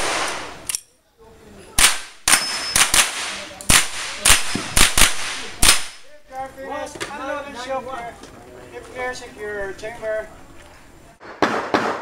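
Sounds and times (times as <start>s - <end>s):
rifle shots with echo: 0.0s - 0.6s, 1.8s - 6.1s, 11.2s - 12.0s.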